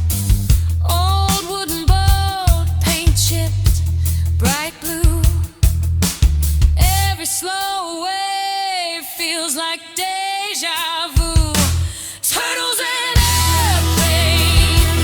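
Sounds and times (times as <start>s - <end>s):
heavy bass: 0.0s - 7.2s, 11.6s - 12.0s, 13.2s - 15.0s
drum hits: 13.2s - 15.0s.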